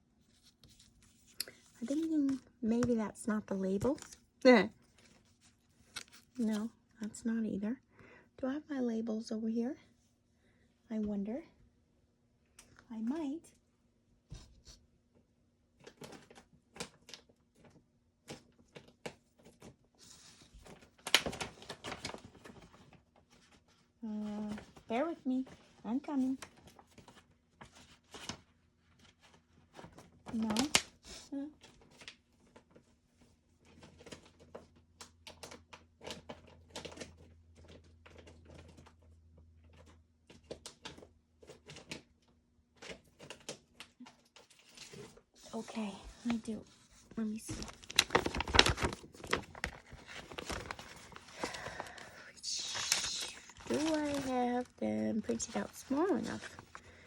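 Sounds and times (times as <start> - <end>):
paper rustling: 0.2 - 6.7, 44.4 - 57.0.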